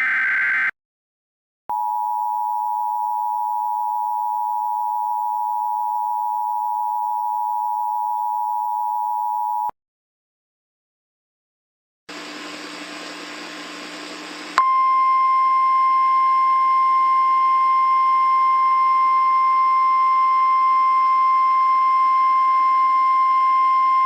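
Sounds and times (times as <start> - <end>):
emergency alert tone: 0.0 - 0.7.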